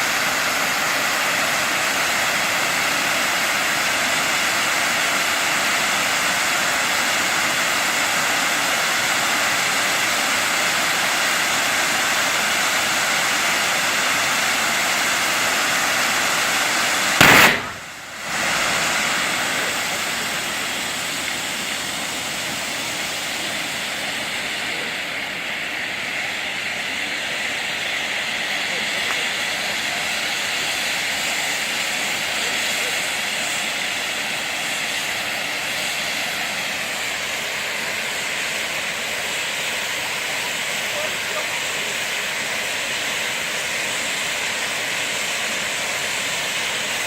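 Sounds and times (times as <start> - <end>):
fireworks hissing: 0.0 - 47.0
loud firework bang: 17.2 - 18.6.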